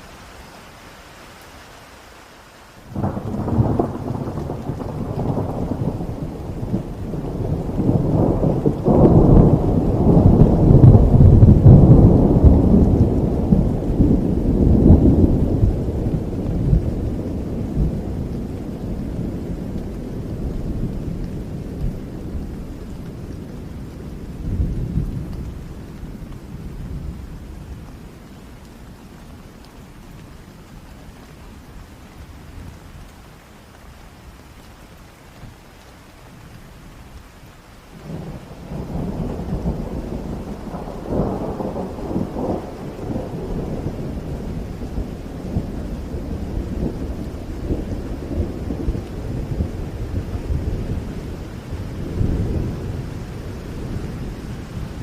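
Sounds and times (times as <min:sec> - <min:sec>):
heavy rain: 0:00.0 - 0:55.0
rolling thunder: 0:02.9 - 0:27.9, 0:38.0 - 0:55.0.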